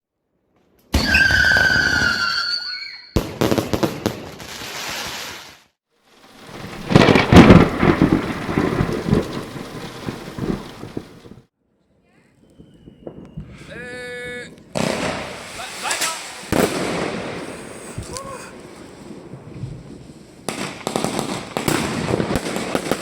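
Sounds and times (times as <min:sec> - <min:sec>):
firework whistles: 0:00.9 - 0:08.0, 0:12.4 - 0:13.7, 0:14.8 - 0:19.2
fireworks crackling: 0:03.2 - 0:11.5, 0:12.6 - 0:23.0
heavy firework bangs: 0:06.3 - 0:11.4, 0:14.7 - 0:18.1, 0:20.4 - 0:23.0.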